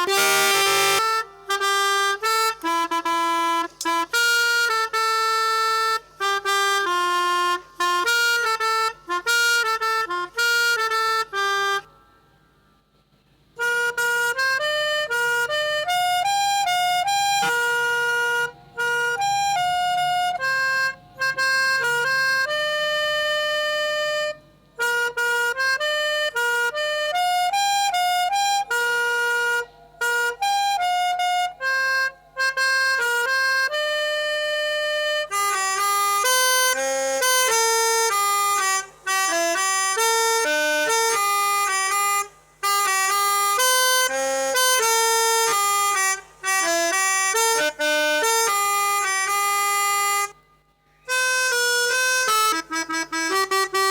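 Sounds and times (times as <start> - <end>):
melodica playing a melody: 0.0 - 12.2, 13.5 - 53.9.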